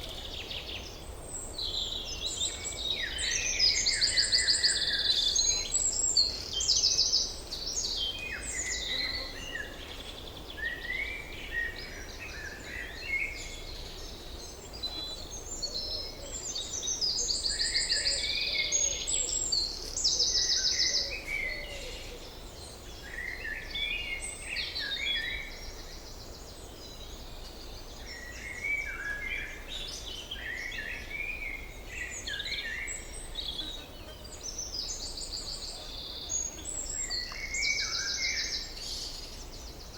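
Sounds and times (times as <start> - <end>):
faint low background noise: 0.0 - 39.9
songbirds singing: 0.0 - 39.9.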